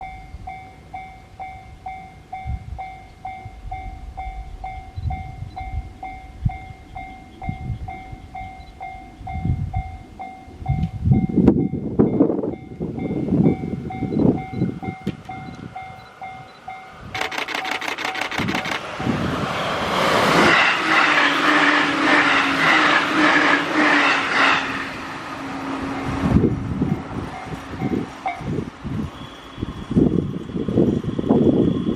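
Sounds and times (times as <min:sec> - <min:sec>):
level-crossing bell dinging: 0:00.0 - 0:17.1
train rumbling past: 0:00.0 - 0:31.9.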